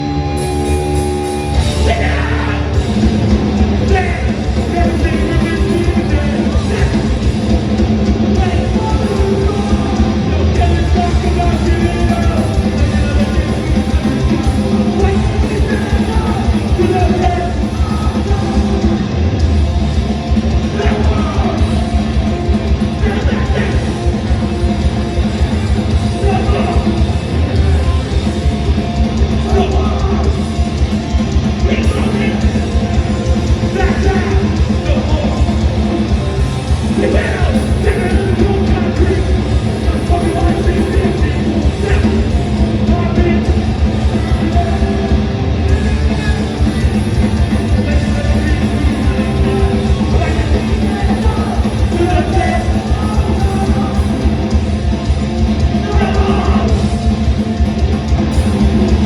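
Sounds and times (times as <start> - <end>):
distorted guitars: 0.0 - 59.0
drums: 0.0 - 59.0
shouted vocals: 1.5 - 7.3, 29.4 - 30.5, 31.6 - 54.7, 55.6 - 57.0.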